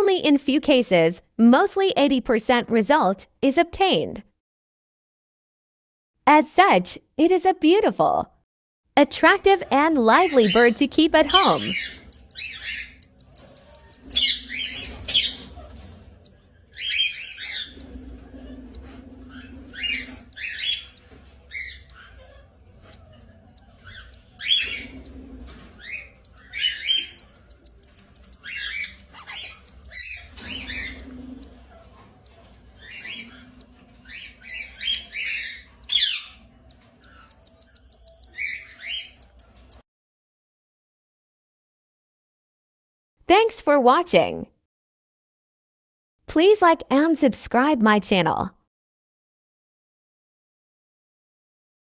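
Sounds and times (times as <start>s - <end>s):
birds squawking: 10.1s - 39.8s.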